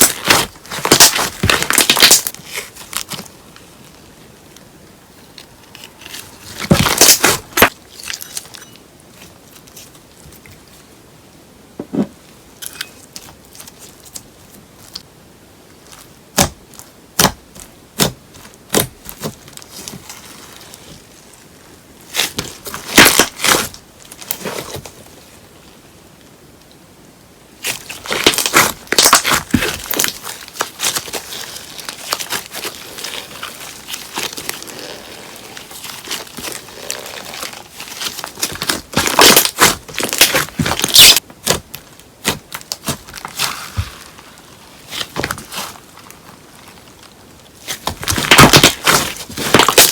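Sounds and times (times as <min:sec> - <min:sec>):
slime crackling and popping: 0:00.0 - 0:03.3, 0:05.8 - 0:08.6, 0:22.1 - 0:24.5, 0:27.6 - 0:49.9.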